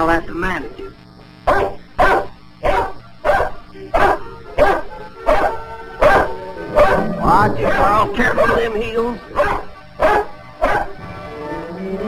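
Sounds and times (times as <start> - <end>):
faint music: 0.0 - 12.0
dog barking: 1.5 - 8.7, 9.3 - 11.0.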